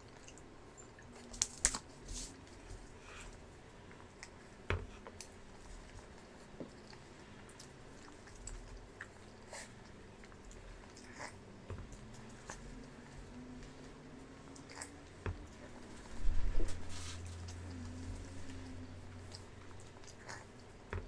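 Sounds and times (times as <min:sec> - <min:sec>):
wet smacks and clicks: 0:01.1 - 0:01.9.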